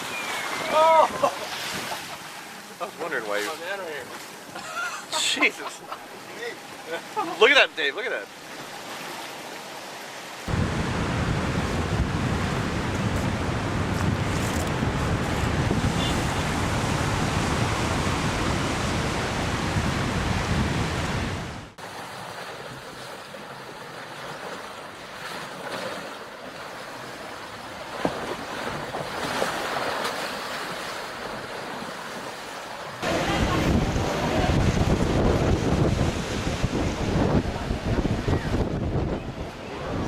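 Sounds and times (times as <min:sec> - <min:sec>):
ocean waves breaking: 0:00.0 - 0:40.0
wind buffeting microphone: 0:10.5 - 0:21.8, 0:33.0 - 0:40.0.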